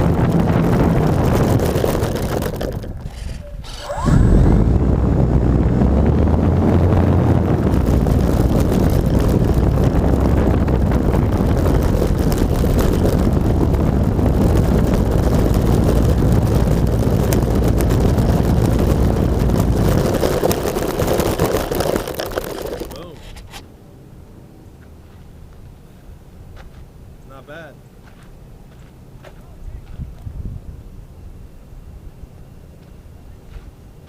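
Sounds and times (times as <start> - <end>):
electric motor and propeller: 0.0 - 23.6
wind rushing over camera: 0.0 - 23.6.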